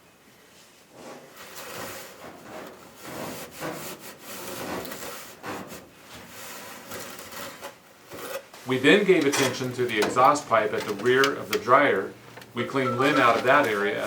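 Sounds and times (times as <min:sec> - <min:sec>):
scrubbing inside vent pipe: 0:00.9 - 0:14.0.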